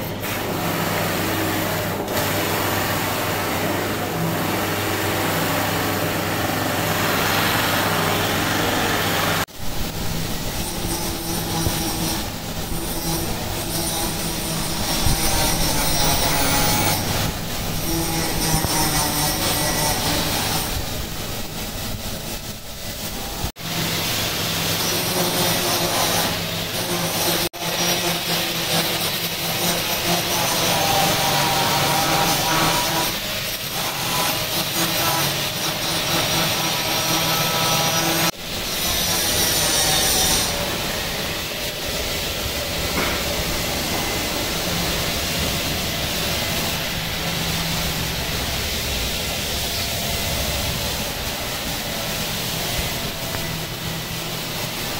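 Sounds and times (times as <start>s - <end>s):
buffing machine grinding hiss: 0.0s - 54.9s.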